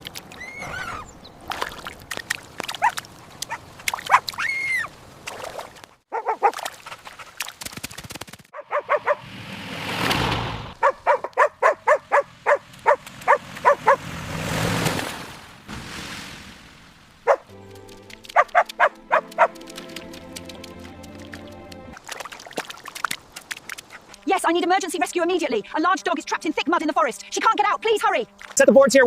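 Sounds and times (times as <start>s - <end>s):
dog barking: 6.1s - 6.6s, 8.6s - 9.2s, 10.8s - 14.0s, 17.3s - 17.5s, 18.3s - 19.6s
rushing noise: 9.0s - 10.8s.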